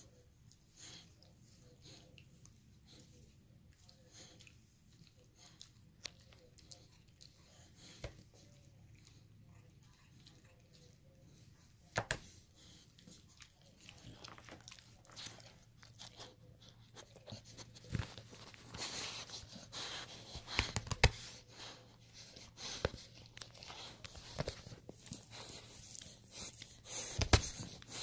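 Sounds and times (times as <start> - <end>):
dog chewing on a toy: 0.0 - 28.0.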